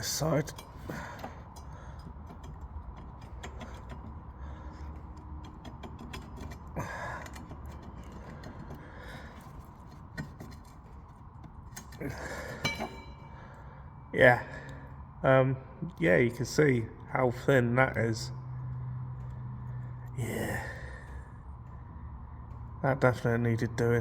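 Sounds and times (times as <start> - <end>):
light metallic clicks and taps: 0.3 - 12.0.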